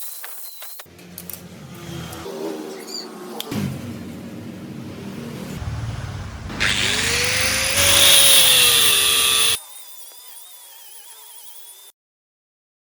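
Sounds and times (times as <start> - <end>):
power tool grinding steel: 6.5 - 11.9.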